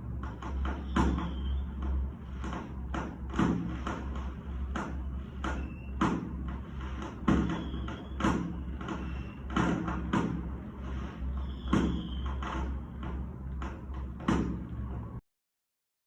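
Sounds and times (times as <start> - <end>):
fireworks whistling: 0.6 - 2.6, 3.3 - 12.8.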